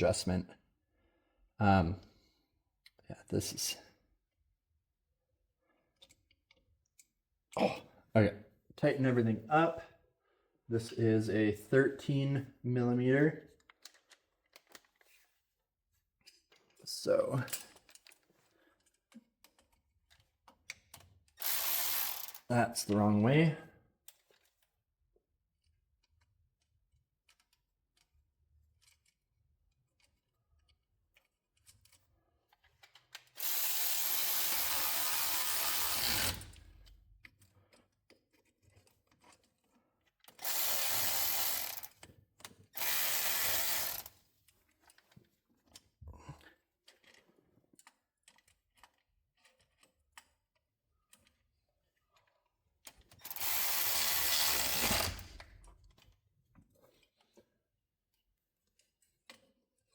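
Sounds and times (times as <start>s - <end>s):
cordless power tool driving bolts: 21.4s - 22.5s, 33.3s - 36.9s, 40.3s - 42.0s, 42.7s - 44.1s, 53.2s - 55.7s.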